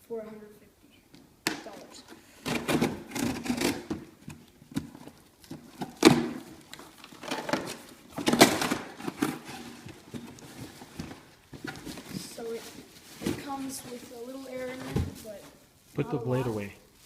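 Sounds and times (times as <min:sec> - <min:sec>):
box rustling: 0:02.4 - 0:15.3.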